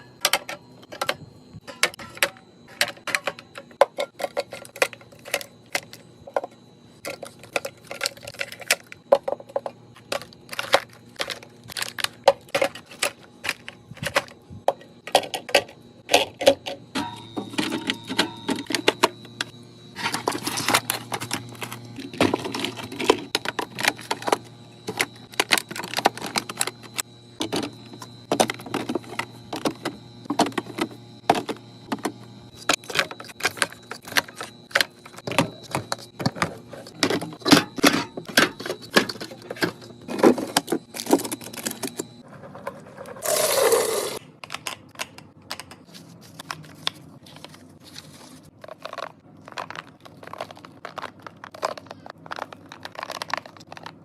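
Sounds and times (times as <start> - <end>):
faint steady hum: 0.0 - 54.0
drink cans and bottles clattering: 32.9 - 44.2.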